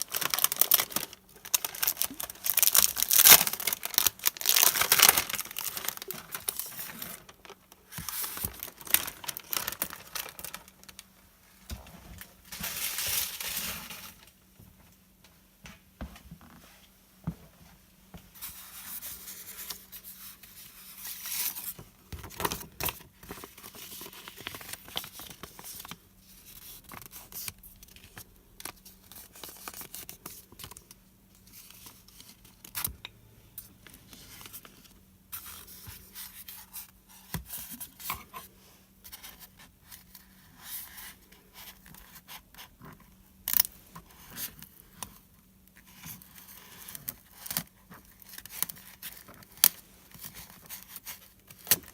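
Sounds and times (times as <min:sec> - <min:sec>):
packaging scraping and tearing: 0:00.0 - 0:11.0.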